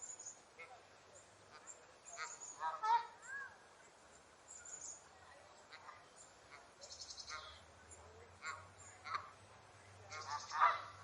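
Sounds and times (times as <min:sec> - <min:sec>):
high chatter: 0:00.0 - 0:11.0
geese honking: 0:01.5 - 0:03.2, 0:05.7 - 0:07.6, 0:08.3 - 0:09.4, 0:10.0 - 0:11.0.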